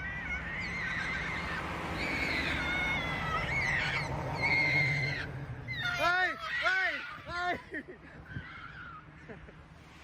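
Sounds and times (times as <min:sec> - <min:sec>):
high-pitched wavering animal calls: 0:00.0 - 0:07.2.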